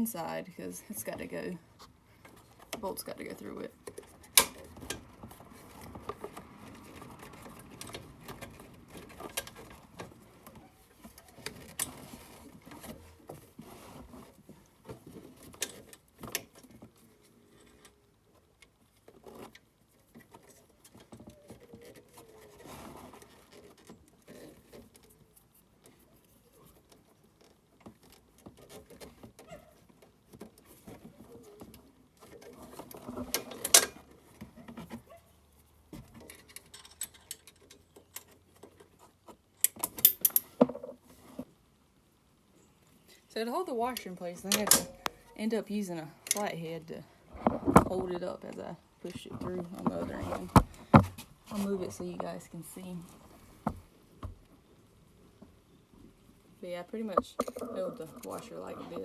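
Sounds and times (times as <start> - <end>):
light metal scraping: 56.6 - 59.0.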